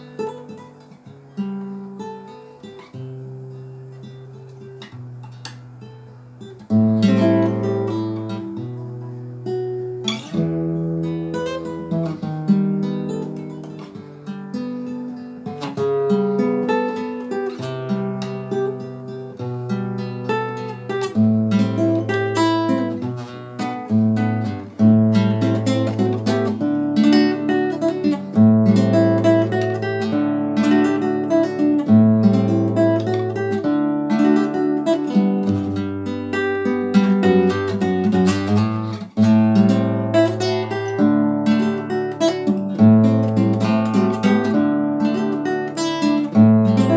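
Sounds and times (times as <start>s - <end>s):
acoustic guitar melody: 0.0s - 46.9s.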